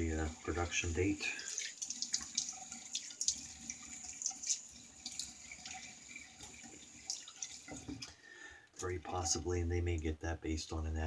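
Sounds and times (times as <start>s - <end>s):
tap water running into sink: 0.0s - 8.2s.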